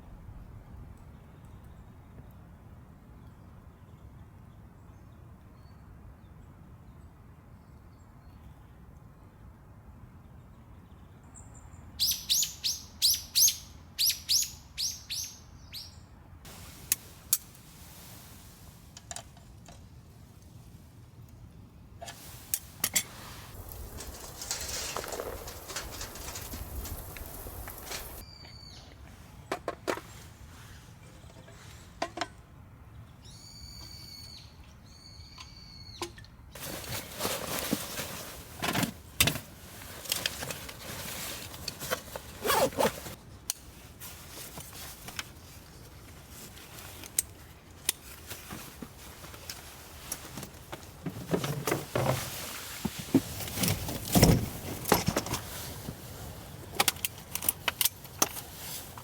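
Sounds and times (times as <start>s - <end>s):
camping gear knocking and rustling: 22.0s - 28.2s, 36.6s - 43.2s, 46.7s - 59.0s.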